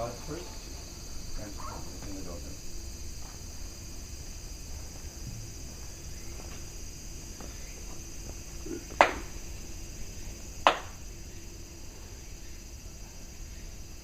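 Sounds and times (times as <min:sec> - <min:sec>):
sharp hand claps: 0:08.9 - 0:09.4, 0:10.6 - 0:11.0.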